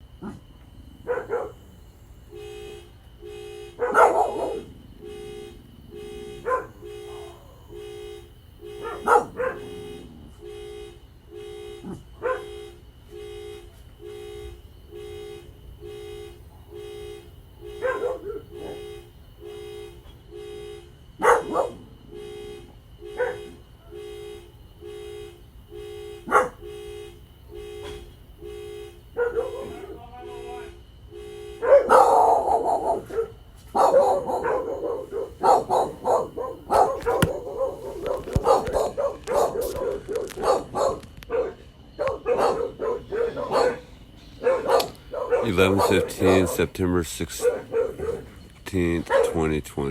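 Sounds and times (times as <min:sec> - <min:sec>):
dog barking: 0:00.2 - 0:01.8, 0:03.7 - 0:04.8, 0:06.0 - 0:10.6, 0:11.8 - 0:12.7, 0:16.5 - 0:17.0, 0:17.6 - 0:19.0, 0:21.2 - 0:22.0, 0:23.1 - 0:24.2, 0:26.2 - 0:26.8, 0:29.1 - 0:30.7, 0:31.6 - 0:48.4, 0:49.0 - 0:49.6
car horn honking: 0:01.0 - 0:49.9.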